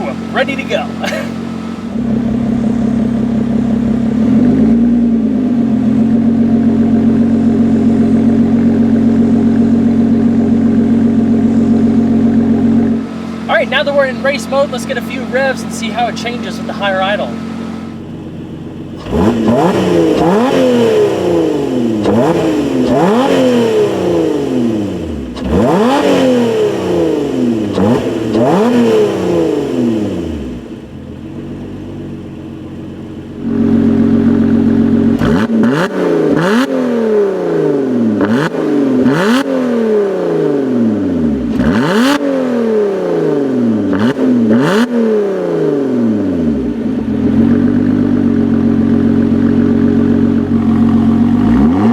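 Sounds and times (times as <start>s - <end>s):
engine idling: 0.0s - 22.3s, 29.9s - 35.4s, 46.3s - 51.9s
car engine revving: 0.0s - 51.9s.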